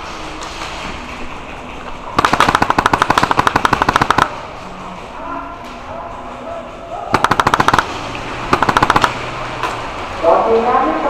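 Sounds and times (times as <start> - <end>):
airsoft gun full-auto burst: 2.2 - 4.4, 7.2 - 9.3.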